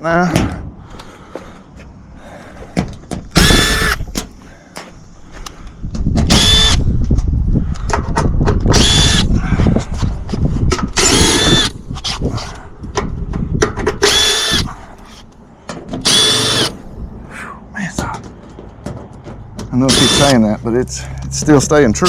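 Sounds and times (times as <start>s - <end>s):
cordless drill motor whine: 3.4s - 4.0s, 6.3s - 6.8s, 8.7s - 9.3s, 11.0s - 12.2s, 14.0s - 14.7s, 16.0s - 16.8s, 19.9s - 20.3s
metal clicks and knocks: 12.9s - 14.1s, 18.0s - 19.9s.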